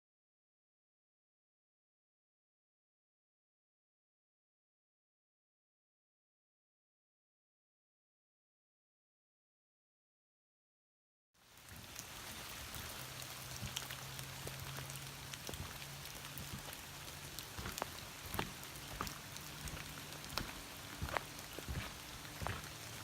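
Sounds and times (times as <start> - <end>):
rain falling: 11.4 - 23.0.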